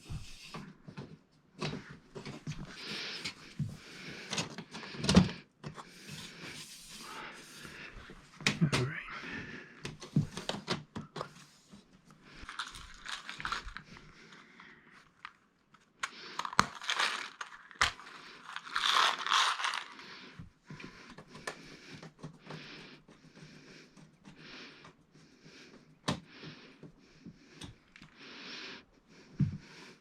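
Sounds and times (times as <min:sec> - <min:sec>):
plastic parts clicking and knocking: 0:04.2 - 0:05.8
crinkling rustle: 0:12.3 - 0:14.4, 0:15.0 - 0:20.3.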